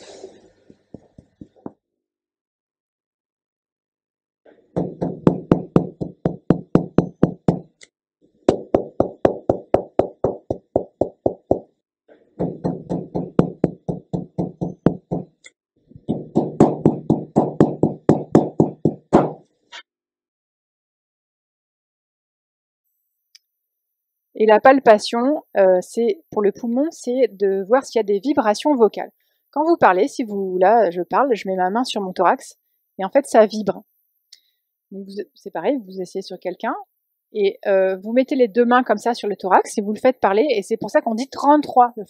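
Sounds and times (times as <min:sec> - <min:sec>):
finger knocking on chest: 0:04.8 - 0:07.7, 0:08.5 - 0:11.7, 0:12.4 - 0:15.4, 0:16.1 - 0:19.4.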